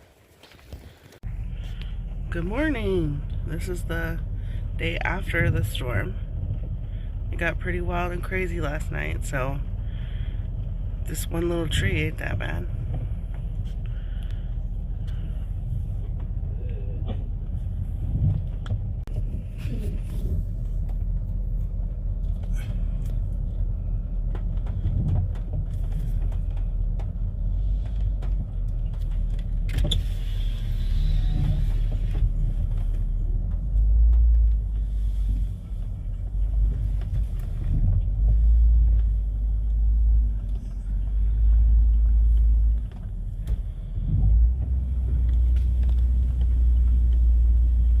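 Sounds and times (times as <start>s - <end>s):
wind buffeting microphone: 11.7s - 28.9s.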